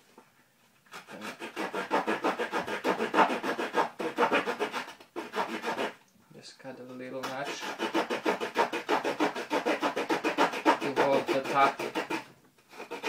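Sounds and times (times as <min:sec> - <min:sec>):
small saw cutting wood: 0:00.9 - 0:06.0, 0:07.2 - 0:13.0.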